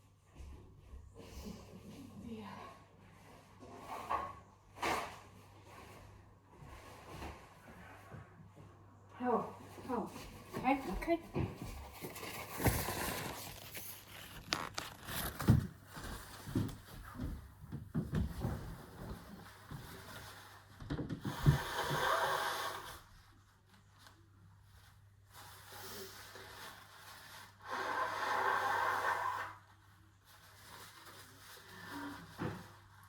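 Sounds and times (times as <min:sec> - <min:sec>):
person blowing nose: 0:21.2 - 0:23.1, 0:27.6 - 0:29.6.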